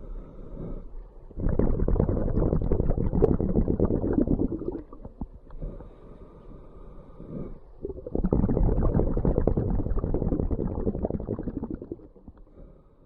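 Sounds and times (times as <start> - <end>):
regulator bubbles underwater: 1.3 - 5.5, 7.8 - 12.5.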